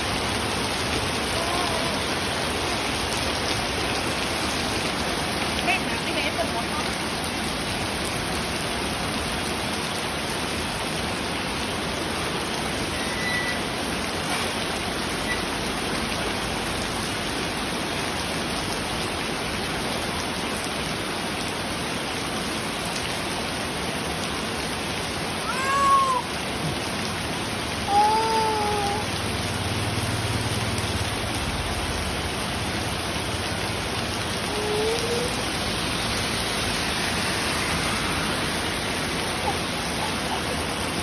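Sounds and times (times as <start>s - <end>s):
steady rain falling: 0.0s - 41.0s
cat meowing: 25.4s - 26.3s, 27.9s - 29.1s, 34.5s - 35.4s.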